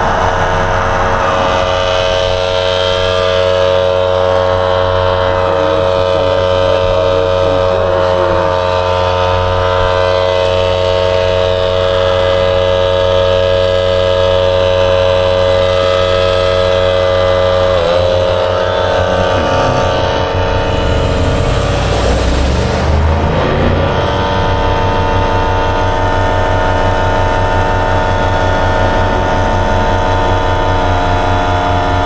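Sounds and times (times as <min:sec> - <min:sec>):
air compressor motor hum: 0:10.6 - 0:31.5.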